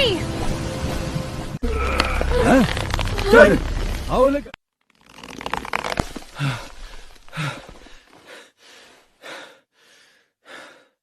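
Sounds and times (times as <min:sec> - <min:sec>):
heavy gasping breaths: 0:06.4 - 0:11.0.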